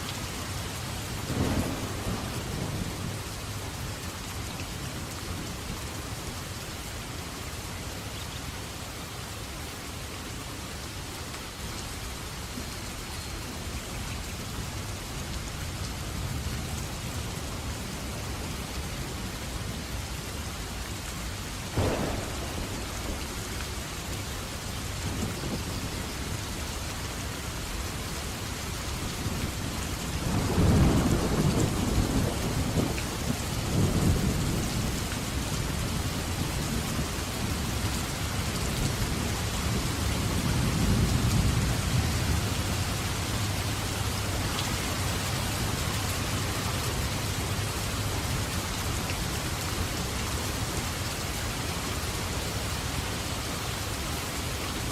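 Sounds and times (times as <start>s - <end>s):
heavy rain: 0.0s - 54.9s
low thunder rumbles: 1.2s - 3.8s, 21.7s - 26.7s, 29.3s - 37.4s
thunder crack: 21.8s - 24.2s.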